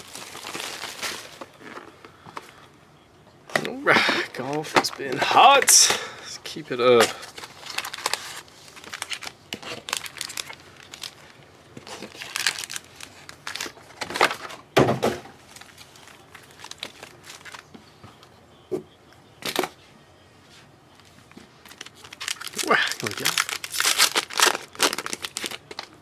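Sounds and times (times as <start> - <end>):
wrapping crinkling and tearing: 0.0 - 2.0, 7.1 - 14.5, 15.5 - 17.7, 21.0 - 26.0.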